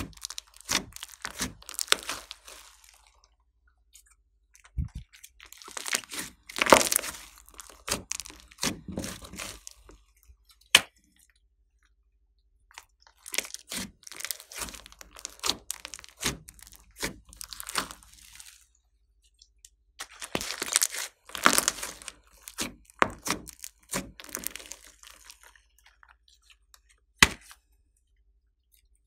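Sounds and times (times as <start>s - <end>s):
slime squished by hand: 0.0s - 3.2s, 4.7s - 10.0s, 12.7s - 18.7s, 20.0s - 27.6s.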